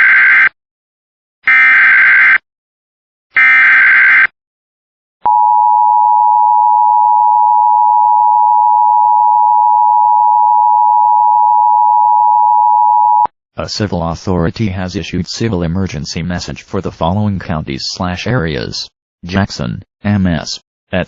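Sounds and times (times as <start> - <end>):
two-tone alarm: 0.0 - 0.6, 1.5 - 2.4, 3.4 - 4.3, 5.3 - 13.3.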